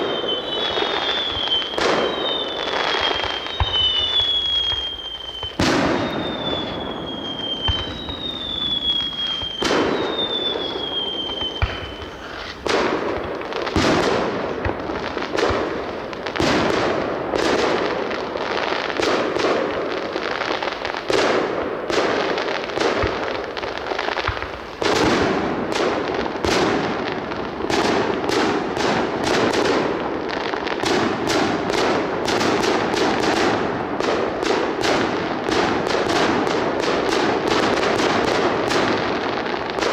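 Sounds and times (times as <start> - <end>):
firework whistles falling in pitch: 0.0 - 13.3
firework bangs and crackle: 0.0 - 39.9.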